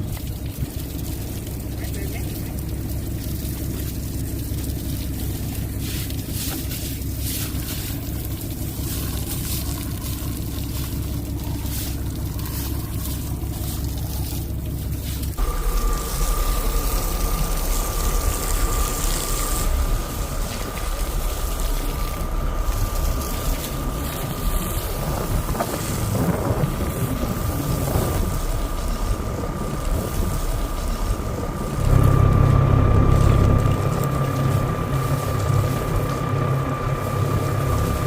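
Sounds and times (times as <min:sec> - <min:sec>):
boat engine running: 0:00.0 - 0:38.0
wind buffeting microphone: 0:15.4 - 0:38.0.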